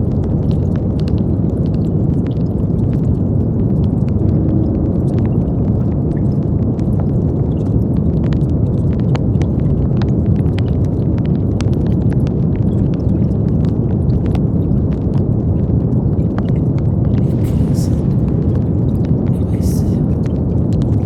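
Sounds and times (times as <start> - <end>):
deep rushing brown noise: 2.4 - 6.8, 16.4 - 21.0.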